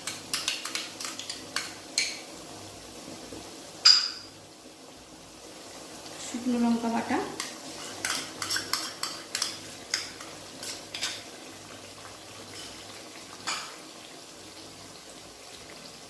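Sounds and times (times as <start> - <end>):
onions sizzling in hot oil: 0.0 - 16.0
spoon clinking on cookware: 3.8 - 4.3, 7.4 - 11.2, 13.4 - 13.8.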